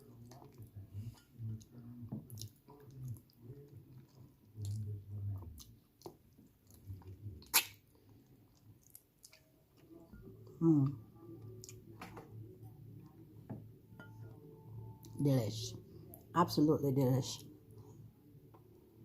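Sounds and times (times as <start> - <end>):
person chewing: 2.3 - 11.8.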